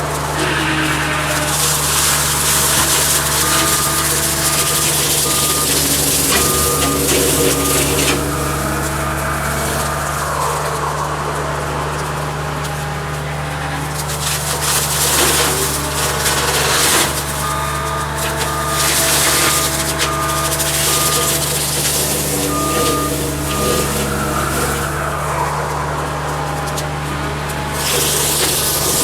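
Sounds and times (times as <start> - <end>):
brush cutter cutting: 0.0 - 29.0
diesel engine running: 0.0 - 29.0
backup alarm beeping: 0.4 - 10.4, 15.0 - 25.4.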